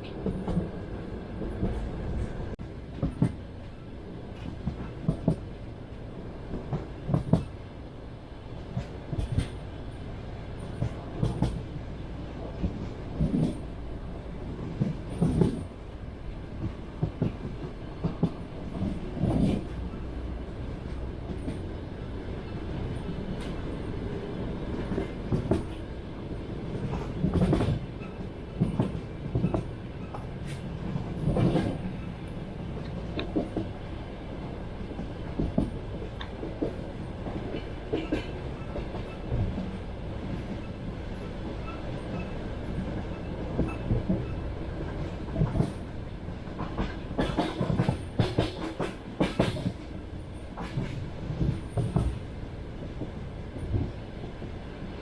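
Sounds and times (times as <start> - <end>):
train rolling rumble: 0.0 - 55.0
train wheels clacking: 8.6 - 9.7, 10.6 - 11.7, 14.5 - 15.9, 16.6 - 20.0, 24.7 - 25.9, 26.7 - 33.9, 34.8 - 54.0.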